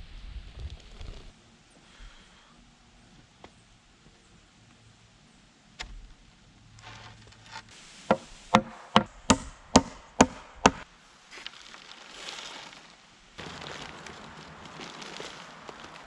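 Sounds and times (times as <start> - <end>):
hammer blows on wood: 8.1 - 10.8.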